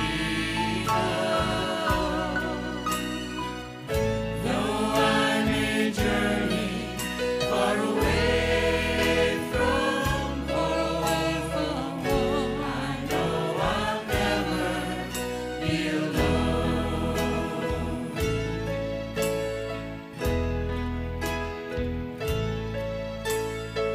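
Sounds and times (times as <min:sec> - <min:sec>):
choir singing: 0:00.0 - 0:18.9
drums: 0:00.0 - 0:23.8
bass line: 0:00.0 - 0:23.9.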